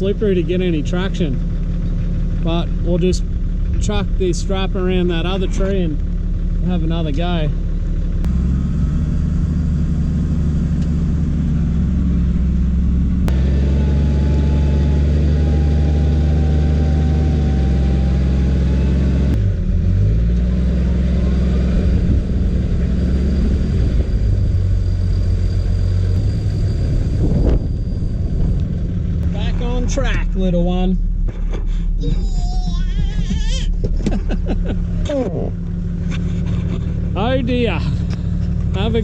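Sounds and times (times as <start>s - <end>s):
car engine running at low revs: 0.0s - 39.0s
faint thin whine: 23.4s - 30.0s.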